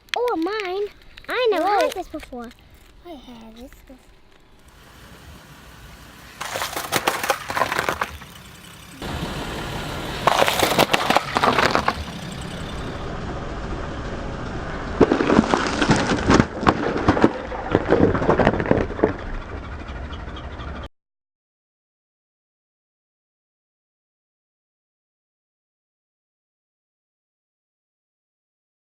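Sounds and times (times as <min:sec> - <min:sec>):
low rumble of rolling car: 0:04.1 - 0:20.9
car tyre crunching objects: 0:04.3 - 0:19.6.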